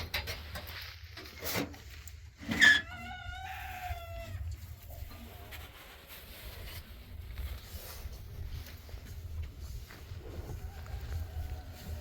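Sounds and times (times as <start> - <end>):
rooster crowing: 2.7 - 4.4, 10.5 - 12.0.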